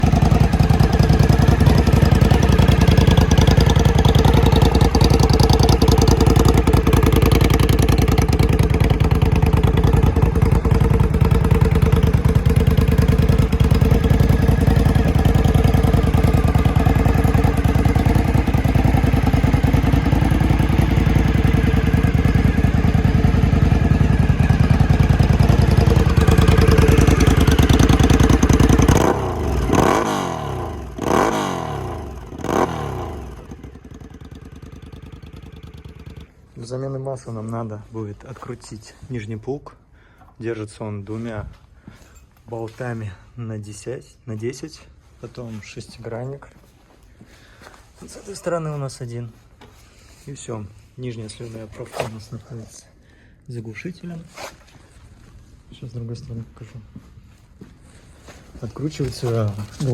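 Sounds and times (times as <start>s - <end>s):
motorcycle engine idling: 0.0s - 36.4s.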